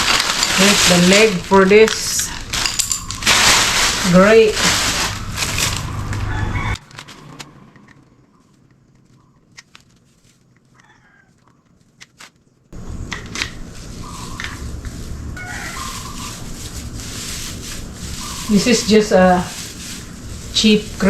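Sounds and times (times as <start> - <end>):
loud background noise: 0.0 - 7.5, 12.8 - 21.0
rooster crowing: 5.2 - 6.9, 10.8 - 11.4, 15.4 - 16.5
chickens clucking: 13.5 - 21.0.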